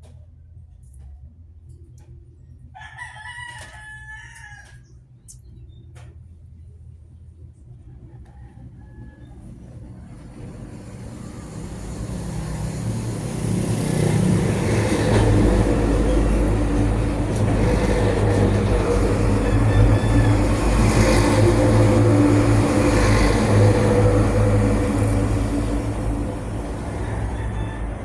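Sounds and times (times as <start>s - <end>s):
vehicle engine running: 9.4s - 28.0s.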